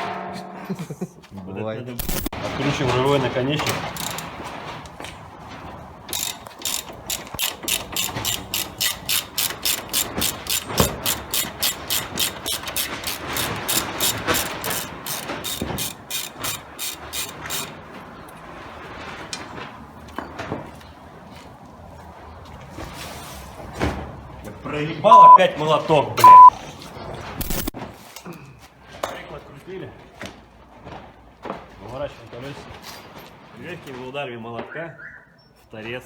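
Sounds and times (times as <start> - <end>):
ratchet wrench clicking: 3.9 - 4.3, 6.1 - 17.7.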